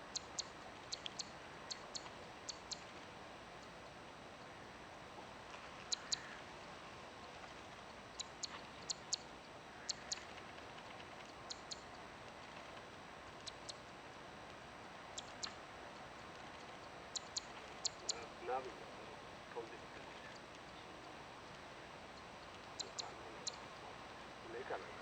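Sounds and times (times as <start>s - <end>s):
bird calling with sharp clicks: 0.1s - 2.9s, 5.9s - 6.3s, 8.1s - 10.3s, 11.2s - 12.0s, 13.4s - 13.9s, 15.2s - 15.6s, 16.5s - 18.3s, 22.1s - 23.8s.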